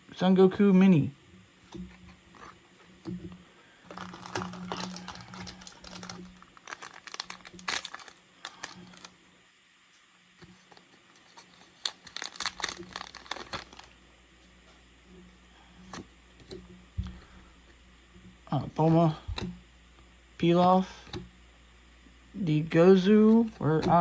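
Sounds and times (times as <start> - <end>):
foil wrapper crinkling and tearing: 3.8 - 9.2, 10.6 - 14.0.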